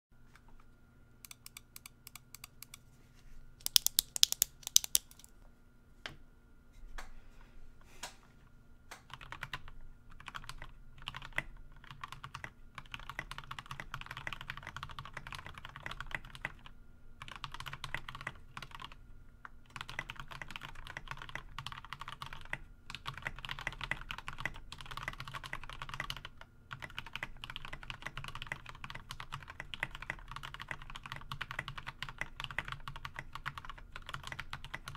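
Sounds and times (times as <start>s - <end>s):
mechanical keyboard typing: 1.3s - 2.8s, 3.6s - 5.3s, 8.9s - 19.0s, 19.7s - 34.9s.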